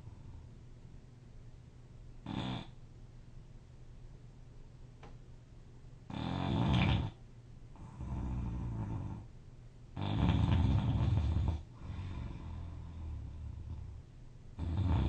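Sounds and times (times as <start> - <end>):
quiet breathing: 0.0 - 0.8, 6.8 - 9.4, 10.2 - 15.0
person snoring loudly: 2.3 - 2.7, 6.1 - 7.2, 10.0 - 13.3, 14.6 - 15.0.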